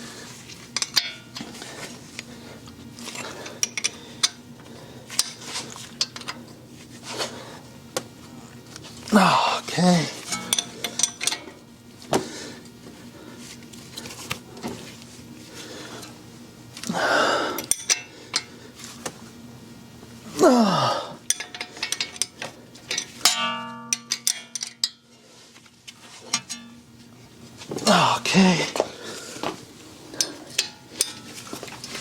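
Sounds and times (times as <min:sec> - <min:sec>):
breathy grunts of effort: 0:09.1 - 0:11.0, 0:16.8 - 0:17.7, 0:20.3 - 0:21.2, 0:27.8 - 0:29.5
ringing metallic tone: 0:23.2 - 0:24.4.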